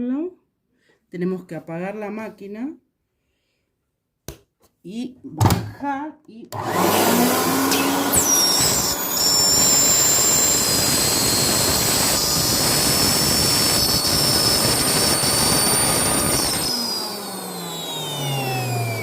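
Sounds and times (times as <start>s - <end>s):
vacuum motor whining: 6.6s - 19.0s.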